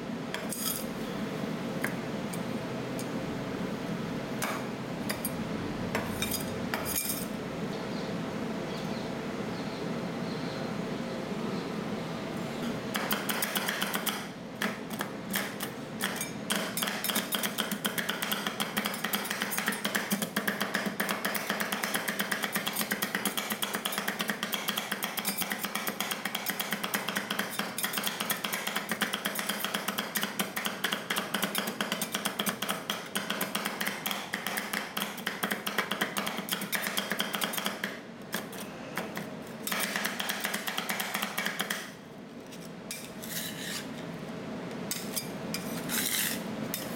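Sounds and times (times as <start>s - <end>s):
metal spatulas chopping on steel plate: 6.0s - 7.3s, 14.9s - 41.9s, 44.9s - 46.9s.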